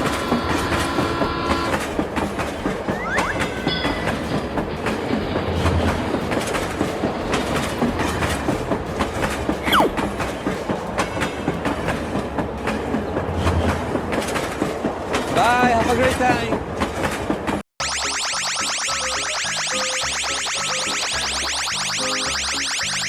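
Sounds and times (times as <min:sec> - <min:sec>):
train wheels clattering: 0:00.1 - 0:17.6.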